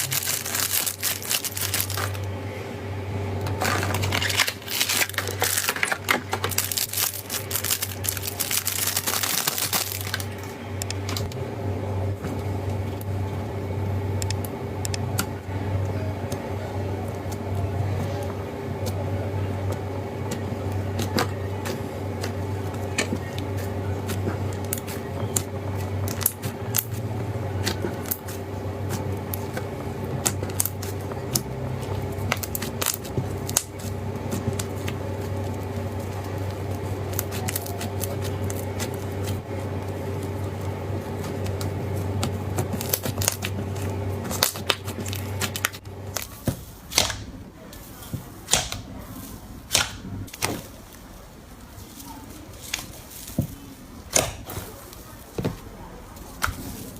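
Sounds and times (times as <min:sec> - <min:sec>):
low hum: 0:00.0 - 0:47.7
slime crackling and clicking: 0:32.2 - 0:35.0, 0:41.2 - 0:46.3.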